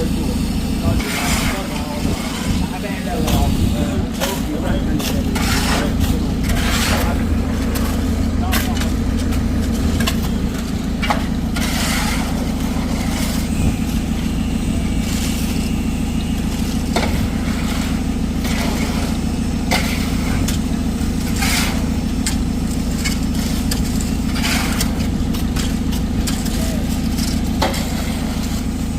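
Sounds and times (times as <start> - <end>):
concrete mixer engine running: 0.0 - 28.9
short scrapes: 3.3 - 13.8, 21.2 - 21.9, 23.1 - 28.6.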